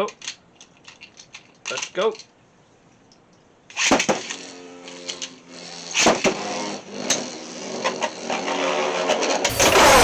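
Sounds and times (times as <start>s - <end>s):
spinning tops whirring: 3.8s - 10.0s
loud crash of top: 9.5s - 10.0s.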